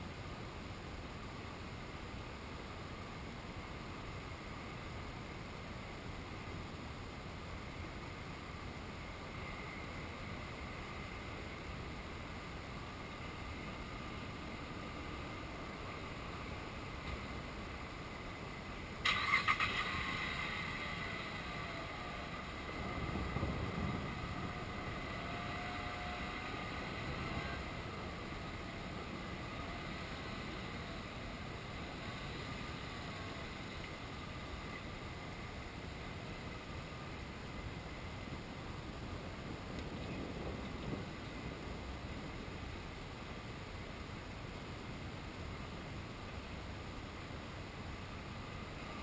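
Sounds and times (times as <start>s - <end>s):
steady hiss: 0.0s - 49.0s
low thunder rumble: 22.2s - 25.4s, 39.4s - 42.4s.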